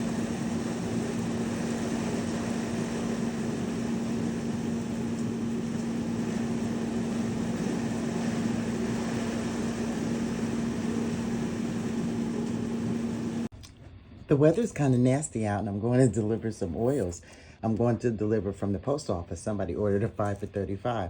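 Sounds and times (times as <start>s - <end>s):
constant low hum: 0.0s - 21.0s.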